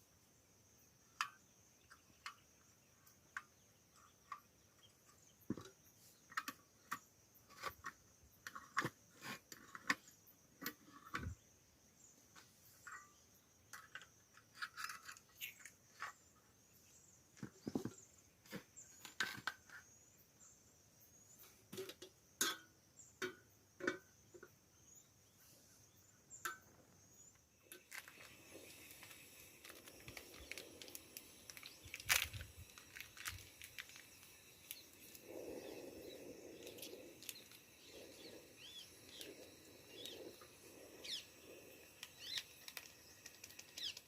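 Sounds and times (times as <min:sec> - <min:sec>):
outdoor background hiss: 0:00.0 - 0:44.0
bird chirps: 0:28.1 - 0:44.0.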